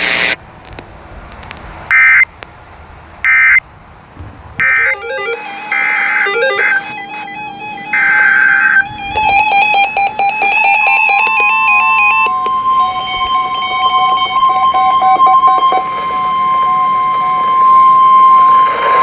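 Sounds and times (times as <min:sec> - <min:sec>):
buzzy data tones: 0:01.9 - 0:02.4, 0:03.2 - 0:03.6, 0:04.2 - 0:19.0
plucked electronic melody: 0:04.6 - 0:17.7
steady single-pitch alarm tone: 0:04.6 - 0:19.0.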